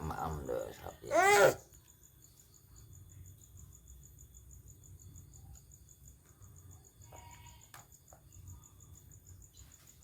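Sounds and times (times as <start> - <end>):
faint cricket chirping: 0.0 - 10.0.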